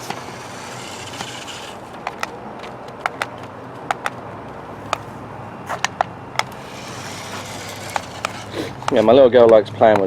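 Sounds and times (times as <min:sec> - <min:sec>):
remote-control car hissing: 0:00.0 - 0:02.0, 0:06.5 - 0:09.0.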